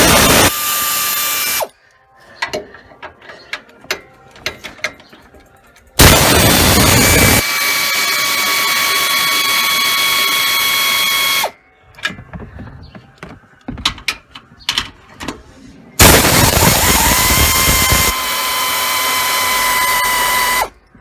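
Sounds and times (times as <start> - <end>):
power wrench rattling whine: 0.0 - 1.7, 6.0 - 11.6, 16.0 - 20.7
metallic clicks and knocks: 2.4 - 6.0, 13.2 - 15.4.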